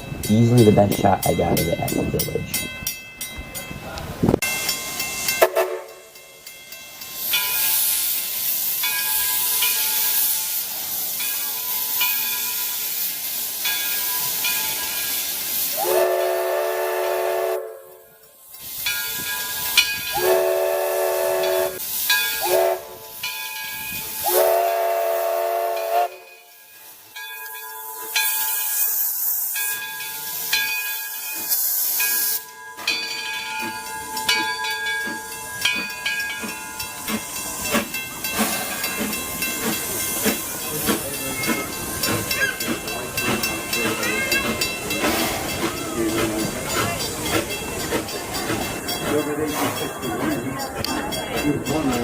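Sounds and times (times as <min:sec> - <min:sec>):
steam locomotive hissing: 0:00.0 - 0:52.0
steam whistle blowing: 0:05.4 - 0:06.0, 0:15.6 - 0:18.2, 0:20.1 - 0:21.8, 0:22.4 - 0:23.2, 0:24.1 - 0:26.4.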